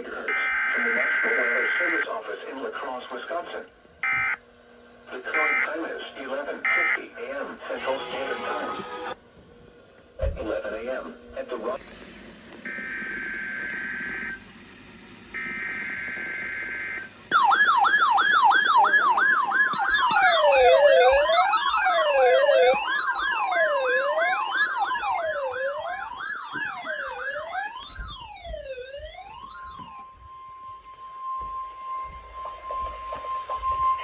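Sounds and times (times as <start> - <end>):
fast warbling siren yelp: 0.3 - 2.0, 12.7 - 14.4, 15.4 - 34.0
rising and falling siren wail: 0.3 - 2.0, 12.6 - 14.5, 15.3 - 34.0
steady high alert tone: 7.8 - 9.2, 16.5 - 34.0.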